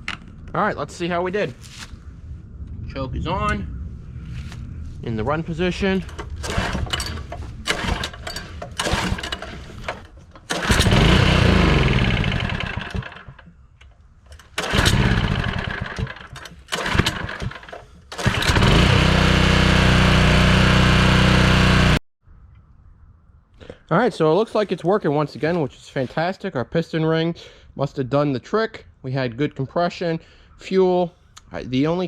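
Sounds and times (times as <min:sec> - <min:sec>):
recoil starter pulls: 0:06.0 - 0:13.5, 0:14.3 - 0:22.0
small engine running: 0:06.4 - 0:09.9, 0:10.5 - 0:13.4, 0:14.6 - 0:22.0.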